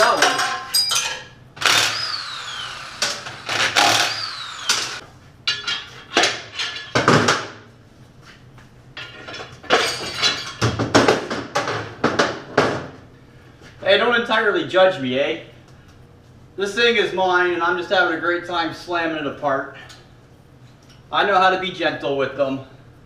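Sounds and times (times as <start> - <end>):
metal clanks and knocks: 3.0 - 7.6, 9.0 - 12.9.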